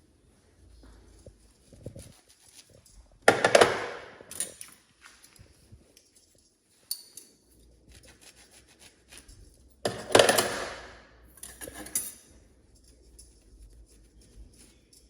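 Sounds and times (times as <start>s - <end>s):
metal cutlery clattering: 3.3s - 4.8s, 9.9s - 10.8s, 11.4s - 13.0s
cutlery clicks and clinks: 3.3s - 5.4s, 6.0s - 7.4s, 9.9s - 13.4s.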